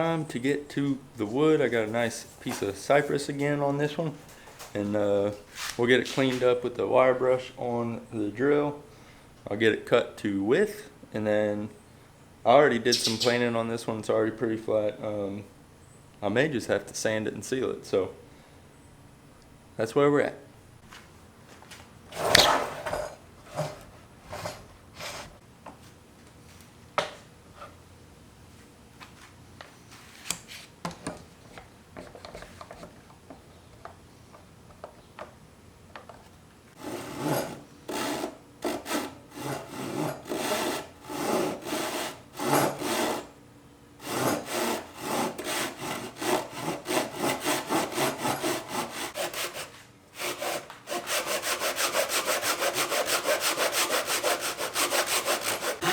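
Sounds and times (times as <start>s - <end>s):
hand tool stroking across wood: 5.5s - 6.5s, 36.8s - 43.3s, 44.0s - 55.9s.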